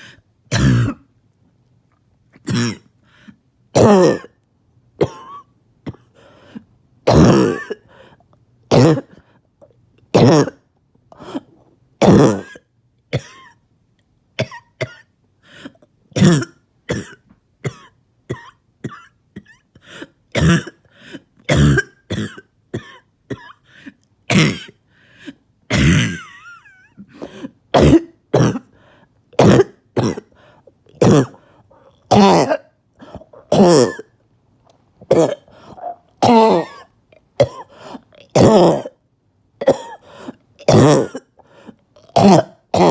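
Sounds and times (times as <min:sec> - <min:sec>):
person coughing harshly: 0:00.5 - 0:01.1, 0:02.4 - 0:02.9, 0:03.8 - 0:04.4, 0:05.0 - 0:06.1, 0:07.1 - 0:07.9, 0:08.7 - 0:09.2, 0:10.2 - 0:13.6, 0:14.4 - 0:23.6, 0:24.3 - 0:28.7, 0:29.4 - 0:30.4, 0:31.0 - 0:31.5, 0:32.1 - 0:34.2, 0:35.1 - 0:39.0, 0:39.6 - 0:41.4, 0:42.0 - 0:42.9.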